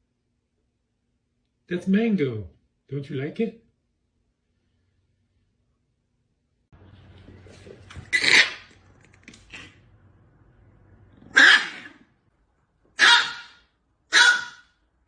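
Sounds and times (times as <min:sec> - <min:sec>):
dog barking: 0:11.3 - 0:12.0, 0:13.0 - 0:14.8.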